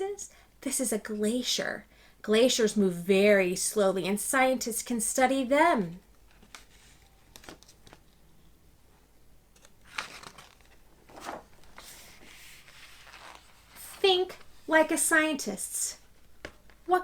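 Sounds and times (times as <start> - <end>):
paper rustling and crinkling: 6.2 - 8.2, 9.5 - 14.7.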